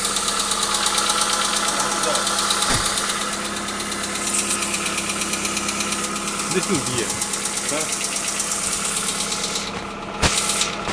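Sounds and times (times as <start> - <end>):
car engine idling: 0.0 - 10.9.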